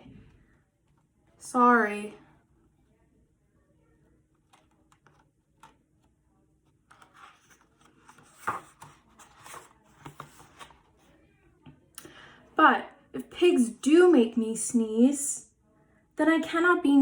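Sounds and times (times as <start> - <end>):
paper rustling and crackling: 6.7 - 11.1.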